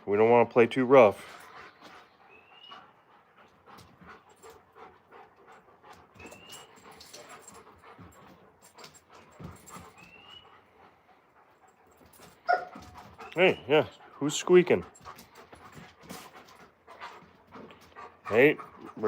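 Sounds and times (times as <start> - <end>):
dogs panting: 0.0 - 19.0
dog whimpering: 10.0 - 10.6.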